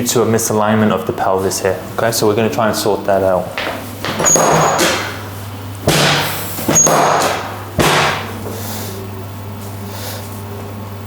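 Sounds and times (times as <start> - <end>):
loud thumps from a table: 3.6 - 5.3, 5.9 - 8.3.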